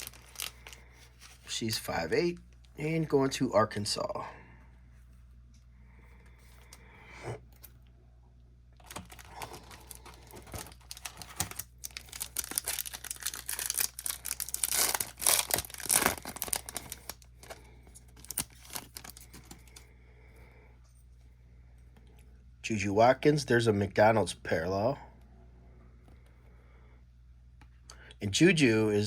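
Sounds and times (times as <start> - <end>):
foil wrapper tearing and crinkling: 0.0 - 1.4, 8.8 - 19.8.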